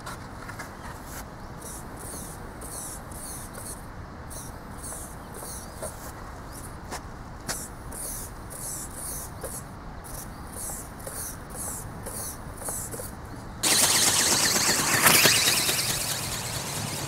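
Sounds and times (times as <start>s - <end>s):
harsh whirring motor: 7.6s - 17.0s.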